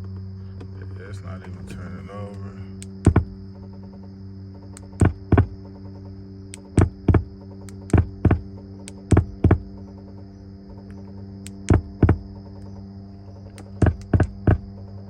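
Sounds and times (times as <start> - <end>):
electrical hum: 0.0 - 15.0
faint high whine: 0.0 - 15.0
repeating electrical double thump: 2.8 - 3.7, 4.7 - 5.8, 6.5 - 9.9, 10.6 - 12.5, 13.6 - 14.8.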